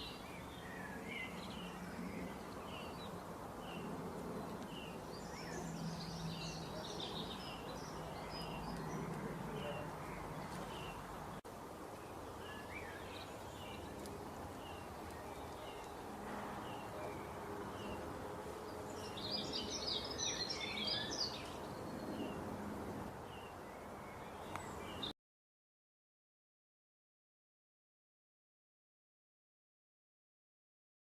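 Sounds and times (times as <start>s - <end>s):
birds chirping: 0.0s - 22.6s, 23.2s - 25.1s.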